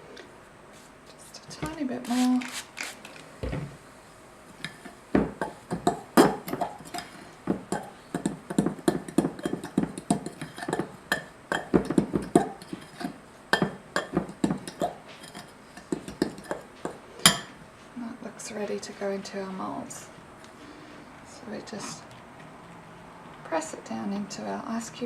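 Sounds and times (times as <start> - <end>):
spoon stirring in mixing bowl: 4.6 - 17.6.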